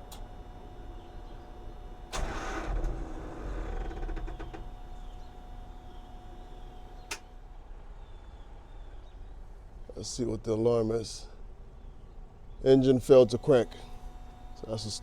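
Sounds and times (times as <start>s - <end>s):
loud mechanical noise: 1.7s - 7.2s.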